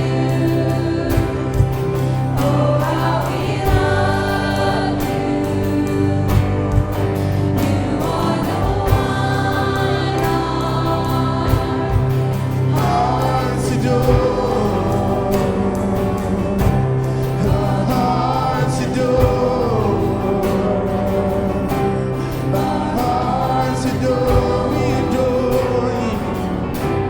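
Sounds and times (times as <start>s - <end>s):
bass: 0.0s - 27.0s
voices singing: 0.0s - 27.0s
worship band playing: 0.0s - 27.0s
drum hits: 1.1s - 18.2s.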